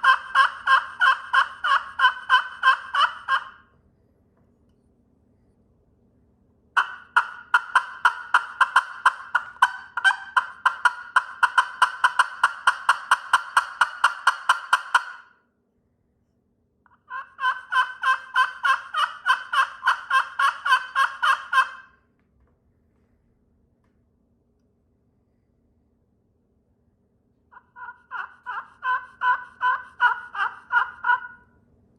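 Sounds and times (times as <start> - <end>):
turkey call notes: 0.0 - 3.7, 6.8 - 15.3, 16.9 - 22.0, 27.5 - 31.6.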